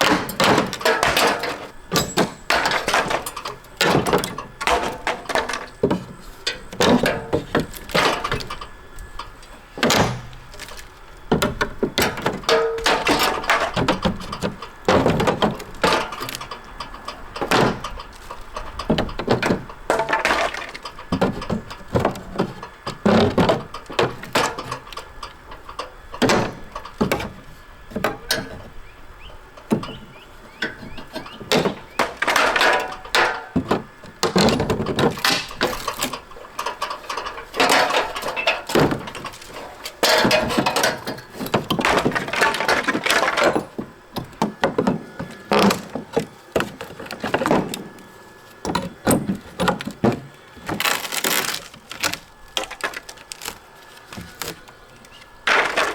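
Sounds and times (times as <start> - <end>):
wood boards cracking and knocking: 0.0 - 28.8, 29.6 - 55.9
wood scraping: 0.0 - 55.9.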